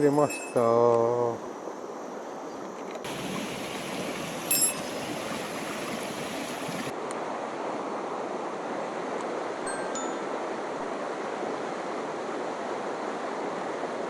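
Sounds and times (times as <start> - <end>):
stream flowing: 3.0 - 7.0.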